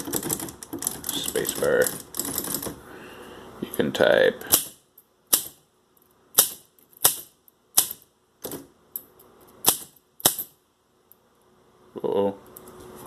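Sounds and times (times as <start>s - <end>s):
manual typewriter keystrokes: 0.0s - 2.8s.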